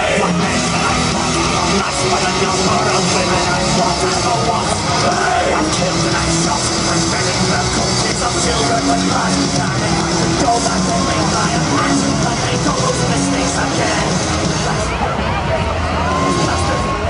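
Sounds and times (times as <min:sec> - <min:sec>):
loud rock music: 0:00.0 - 0:17.0.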